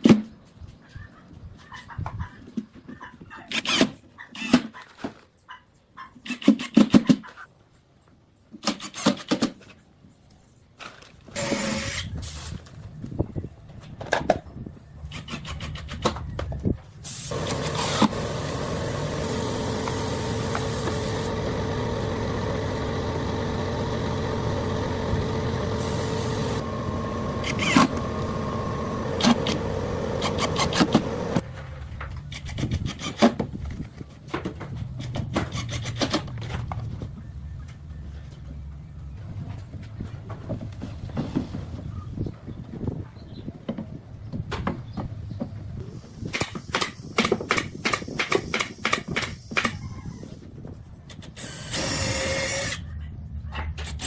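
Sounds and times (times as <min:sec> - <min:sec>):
machine humming: 0:17.3 - 0:31.4.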